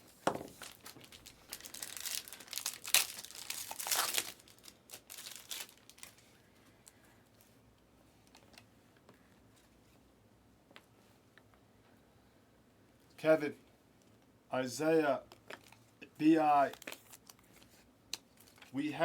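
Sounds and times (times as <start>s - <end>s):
plastic wrapping tearing and crinkling: 0.3s - 6.3s, 16.6s - 18.7s.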